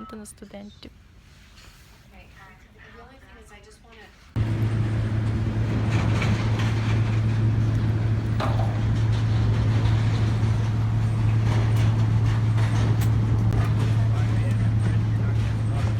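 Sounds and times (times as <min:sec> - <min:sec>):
airliner cabin drone: 0:04.3 - 0:15.9.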